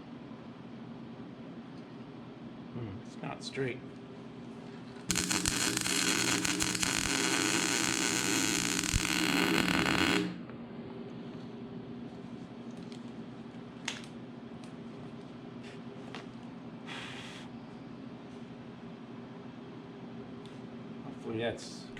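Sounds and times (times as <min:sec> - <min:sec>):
low steady hum: 0:00.0 - 0:16.7
arc welder crackling: 0:04.8 - 0:10.7.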